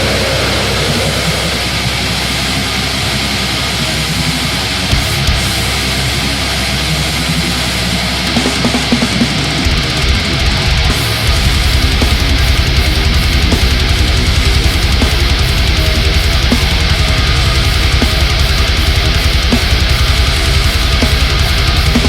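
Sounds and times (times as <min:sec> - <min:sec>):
distorted guitars and bass: 0:00.0 - 0:22.0
drums: 0:00.0 - 0:22.0.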